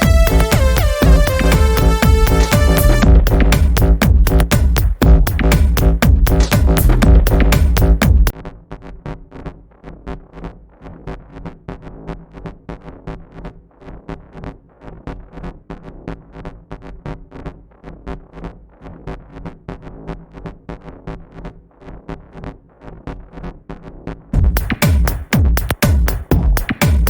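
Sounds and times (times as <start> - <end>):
electronic dance music: 0.0 - 8.3, 24.4 - 27.0.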